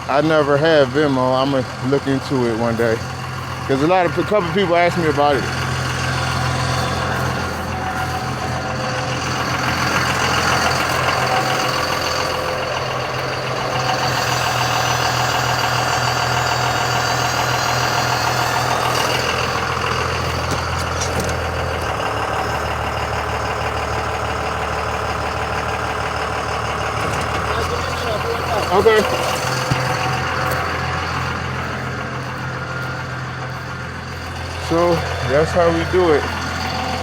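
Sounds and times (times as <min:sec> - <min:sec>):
vehicle engine idling: 0:00.0 - 0:37.0.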